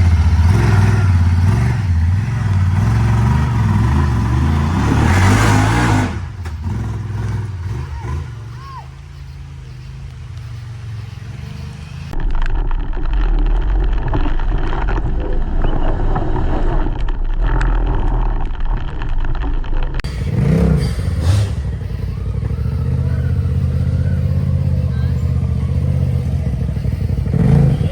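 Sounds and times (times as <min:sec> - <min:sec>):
engine revving: 0:00.0 - 0:12.3, 0:13.5 - 0:27.9
vehicle engines rumbling: 0:00.0 - 0:27.9.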